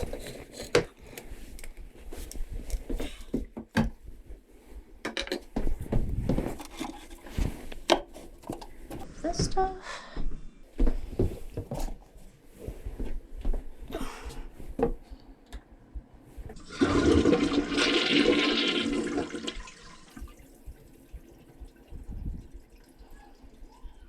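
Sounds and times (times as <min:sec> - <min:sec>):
toilet water rushing: 0:16.6 - 0:23.7.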